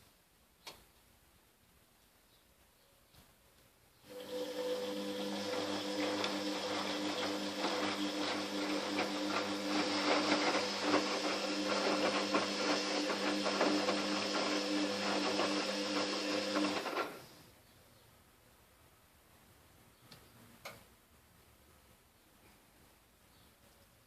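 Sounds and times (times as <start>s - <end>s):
washing machine motor hum: 4.1s - 17.4s.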